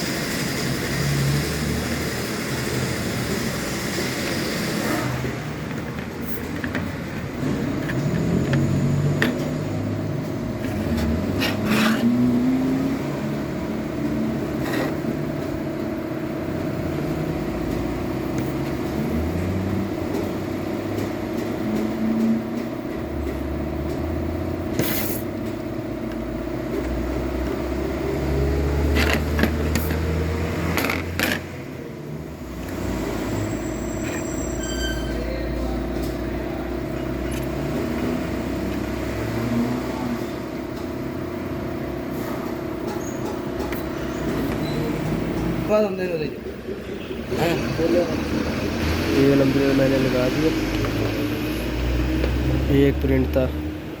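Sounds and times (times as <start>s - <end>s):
mechanical hum: 0.0s - 54.0s
tools clicking and scraping: 4.2s - 12.9s, 14.4s - 15.6s, 24.7s - 27.6s, 28.8s - 31.6s.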